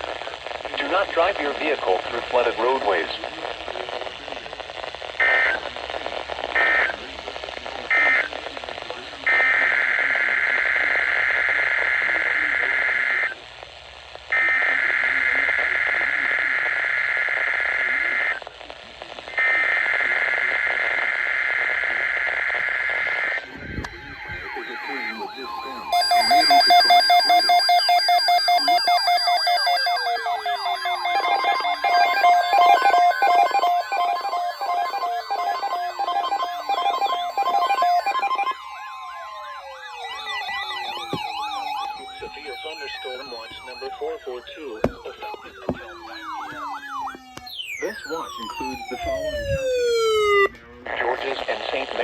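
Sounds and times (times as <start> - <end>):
electronic alert tones: 24.0 - 49.5
gliding electronic notes: 24.7 - 38.6.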